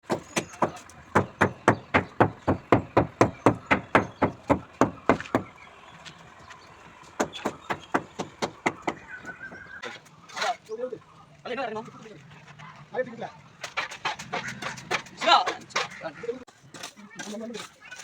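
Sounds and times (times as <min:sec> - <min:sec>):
rapid hammering blows: 0:00.0 - 0:05.6, 0:07.2 - 0:09.6.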